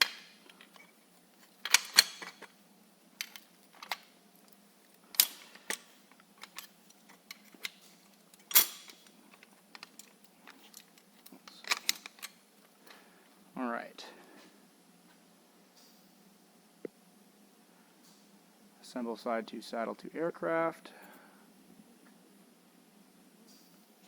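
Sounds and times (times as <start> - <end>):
small hardware parts clicking: 1.6 - 2.5, 3.2 - 12.4.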